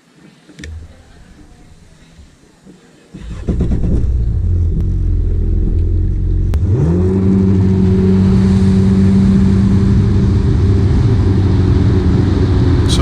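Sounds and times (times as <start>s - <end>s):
rising drone: 0.6s - 2.4s
engine rumble: 0.6s - 2.6s, 3.2s - 13.0s.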